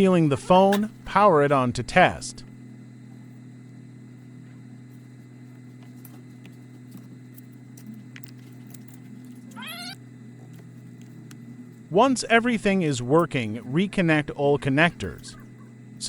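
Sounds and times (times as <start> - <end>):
low electrical hum: 0.0 - 16.0
cat meowing: 9.5 - 10.0.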